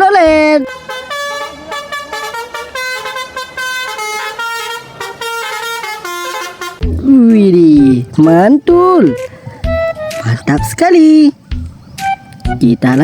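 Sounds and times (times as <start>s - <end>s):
bus horn playing a tune: 0.0s - 7.1s, 7.8s - 10.3s.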